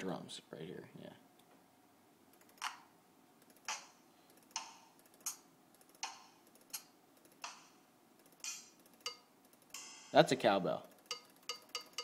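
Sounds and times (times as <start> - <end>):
drum machine percussion hits: 3.6 - 12.0.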